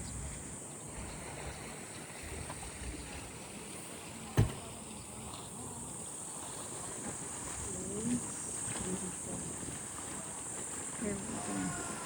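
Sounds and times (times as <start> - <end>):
sharp knock: 4.4 - 4.6.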